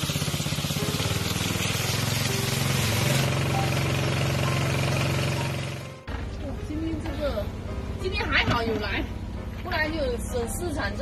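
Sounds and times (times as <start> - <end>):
small engine chugging: 0.0 - 5.9.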